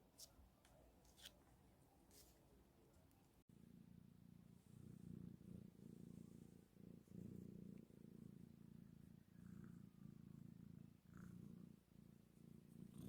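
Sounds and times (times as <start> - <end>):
kitten purring: 3.4 - 13.0.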